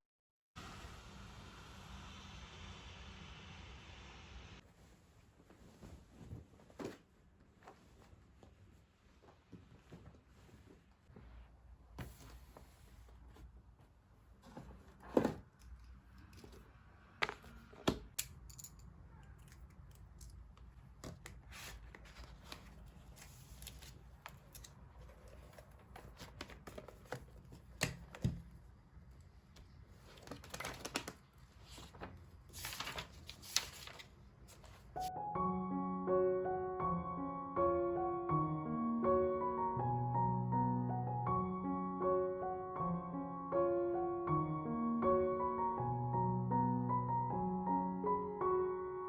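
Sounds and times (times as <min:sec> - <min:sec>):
paper rustling: 0:20.8 - 0:28.4, 0:29.6 - 0:35.1.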